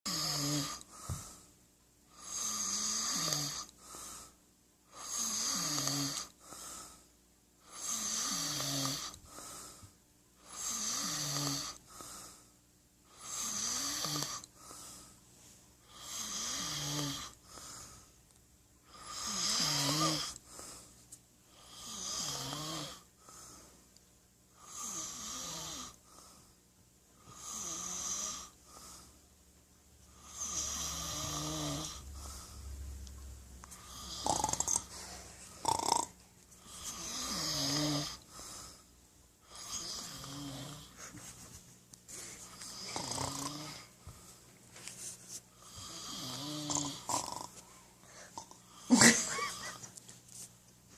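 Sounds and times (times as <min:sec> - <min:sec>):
man snoring: 0:00.1 - 0:00.9, 0:02.1 - 0:04.3, 0:04.9 - 0:06.6, 0:07.6 - 0:09.4, 0:10.4 - 0:11.8, 0:13.1 - 0:14.5, 0:15.8 - 0:17.8, 0:18.8 - 0:20.4, 0:21.5 - 0:23.1, 0:24.6 - 0:26.0, 0:27.2 - 0:29.1, 0:30.1 - 0:32.5, 0:33.8 - 0:35.0, 0:35.6 - 0:38.2, 0:39.4 - 0:41.0, 0:42.6 - 0:43.9, 0:45.6 - 0:47.6
soft breath: 0:00.8 - 0:01.6, 0:03.8 - 0:04.5, 0:06.3 - 0:07.2, 0:09.1 - 0:10.0, 0:11.8 - 0:13.3, 0:14.4 - 0:15.9, 0:17.3 - 0:18.3, 0:20.3 - 0:21.2, 0:23.2 - 0:24.0, 0:32.0 - 0:33.0, 0:34.8 - 0:35.6, 0:38.2 - 0:39.0, 0:40.9 - 0:43.0, 0:47.6 - 0:48.5.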